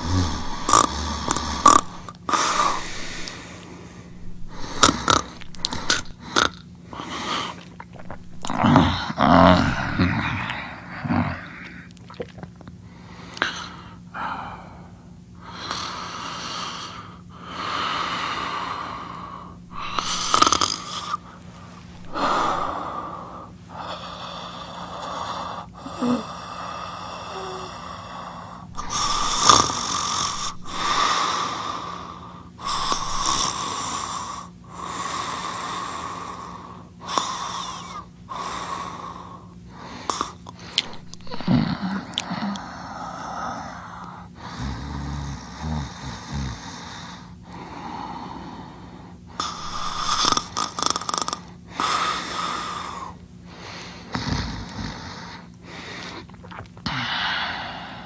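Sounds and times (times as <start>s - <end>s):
loud snoring with wheezing breaths: 0.0s - 7.2s, 8.0s - 11.6s, 19.7s - 21.2s, 21.8s - 23.3s, 25.9s - 39.1s, 40.0s - 43.8s, 44.4s - 47.3s, 49.4s - 53.2s, 54.0s - 55.5s.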